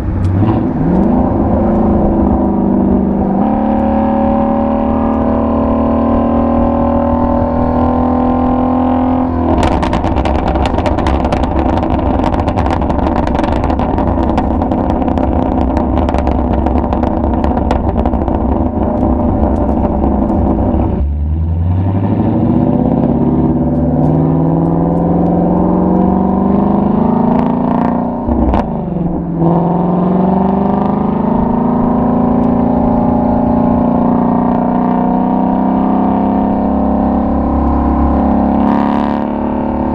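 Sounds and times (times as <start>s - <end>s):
car exhaust drone: 0.0s - 39.9s
exhaust crackling and popping: 0.0s - 39.9s.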